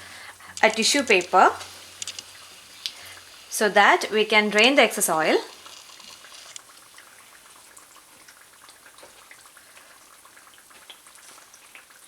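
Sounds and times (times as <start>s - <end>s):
hot oil sizzling and crackling: 0.0s - 12.0s.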